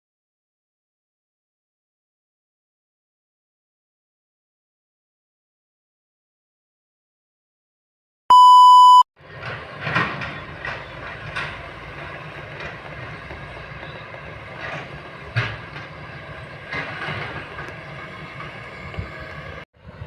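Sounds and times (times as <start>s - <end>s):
electronic beep: 8.3s - 9.0s
excavator diesel engine running: 9.2s - 20.0s
machine knocks and clanks: 9.3s - 16.0s.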